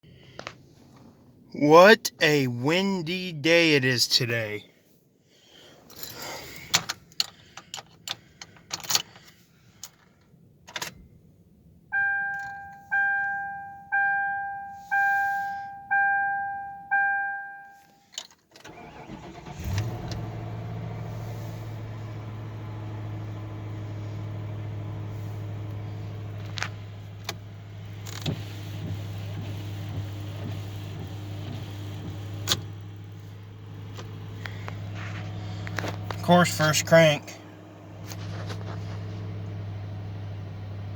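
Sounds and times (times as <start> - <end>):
car engine cranking and idling: 5.6 - 14.6, 18.6 - 40.9
car warning chime dings: 11.9 - 18.0, 36.2 - 37.4.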